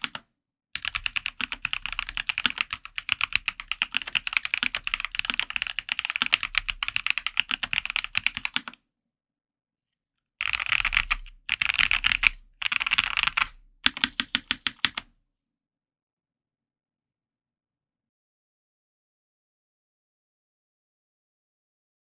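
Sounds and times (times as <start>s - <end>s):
fast typing on mechanical keyboard: 0.0s - 0.2s, 0.8s - 8.8s, 10.4s - 15.1s.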